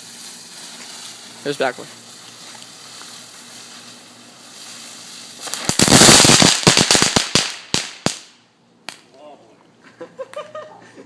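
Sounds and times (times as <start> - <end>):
firework hissing: 0.0 - 8.5
firework crackling and popping: 0.0 - 9.1.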